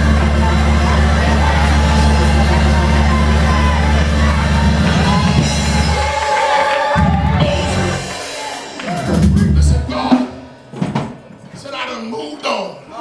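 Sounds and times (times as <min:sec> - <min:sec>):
raised voices: 0:00.0 - 0:10.3
heavy bass line: 0:00.0 - 0:10.6
drums: 0:00.0 - 0:11.6
live church band music: 0:00.0 - 0:12.6.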